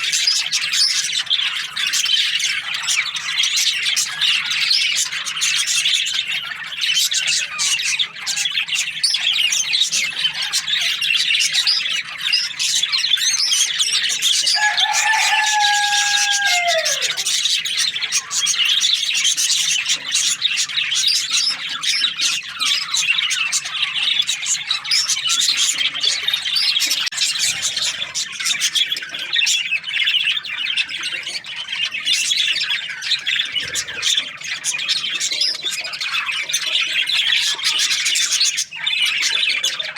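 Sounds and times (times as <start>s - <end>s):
budgerigars chattering: 0.0s - 39.9s
long low bird call: 14.5s - 17.3s.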